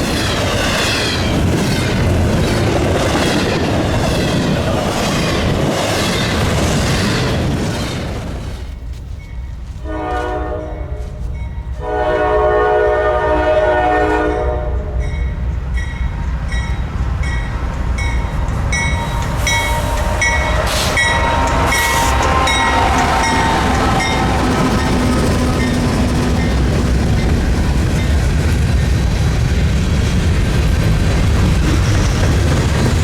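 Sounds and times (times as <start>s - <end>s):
train rumbling: 0.0s - 33.0s
locomotive air horn blasts: 9.8s - 15.0s, 19.4s - 25.6s.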